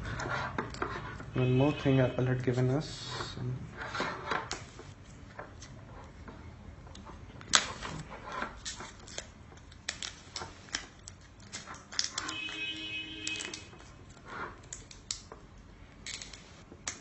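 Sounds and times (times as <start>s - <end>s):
plastic and cable rustling clicks: 6.9s - 15.4s.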